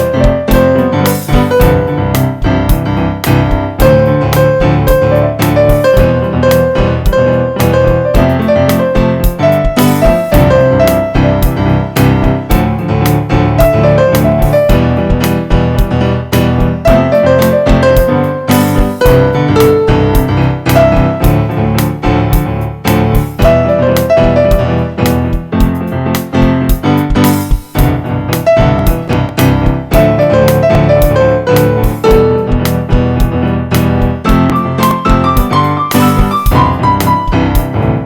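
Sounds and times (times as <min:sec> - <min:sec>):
electric piano melody: 0:00.0 - 0:38.0
steady beat: 0:00.0 - 0:38.0.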